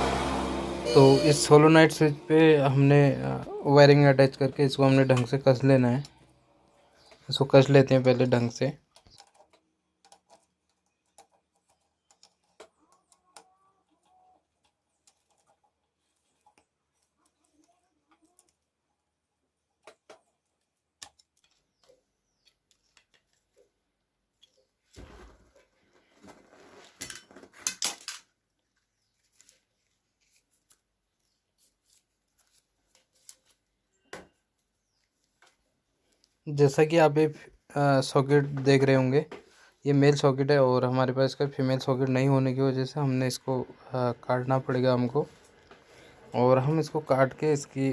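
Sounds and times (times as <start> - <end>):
small clicks and ticks: 8.5 - 18.8, 19.8 - 23.7
faint bird chirps: 10.9 - 14.6.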